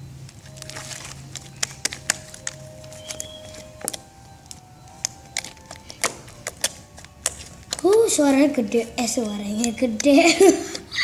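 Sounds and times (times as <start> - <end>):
frozen slime clicking and popping: 0.4 - 8.4.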